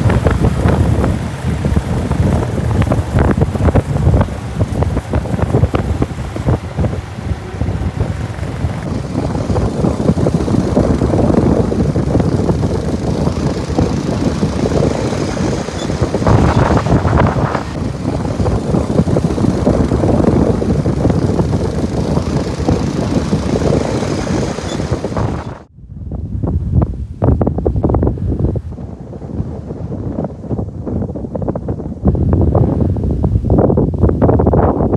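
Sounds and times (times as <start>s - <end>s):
motorcycle engine running: 0.0s - 25.7s
wind buffeting microphone: 0.0s - 34.9s.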